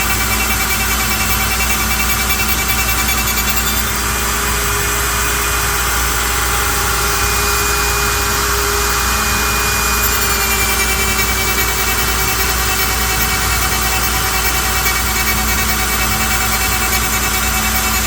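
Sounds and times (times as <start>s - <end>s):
router whining: 0.0s - 18.0s
wood cutting noise: 0.0s - 18.0s.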